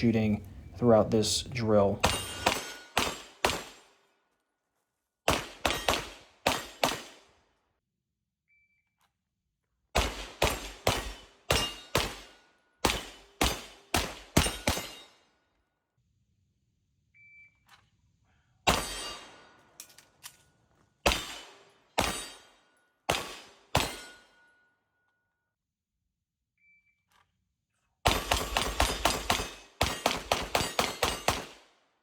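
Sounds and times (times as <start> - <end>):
pistol shots: 2.0 - 3.9, 5.3 - 7.3, 10.0 - 15.0, 21.0 - 22.4, 23.1 - 24.2, 28.1 - 31.8.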